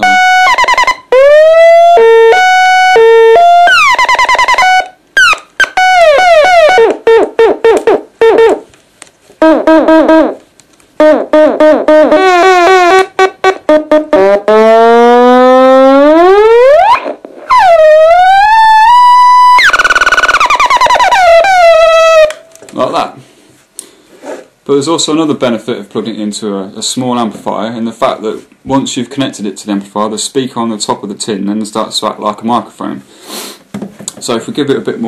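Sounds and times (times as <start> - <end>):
buzzy electronic beeping tones: 0.0 - 8.6, 9.4 - 10.4, 11.0 - 22.2.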